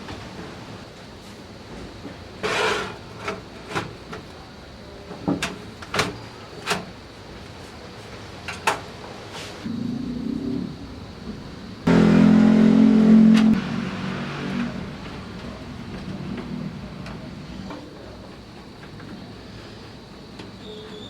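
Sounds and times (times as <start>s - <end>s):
steady low hum: 9.7s - 17.8s.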